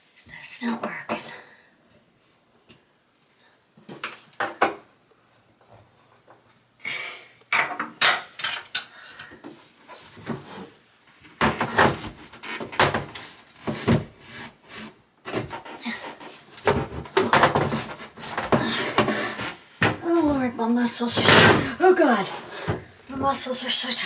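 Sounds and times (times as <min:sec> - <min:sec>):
hard objects knocking and scraping: 0:07.6 - 0:20.5.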